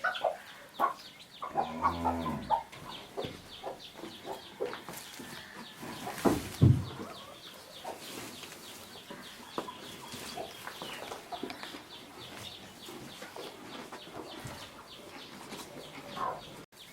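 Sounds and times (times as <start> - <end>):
chicks peeping: 0.0 - 16.9.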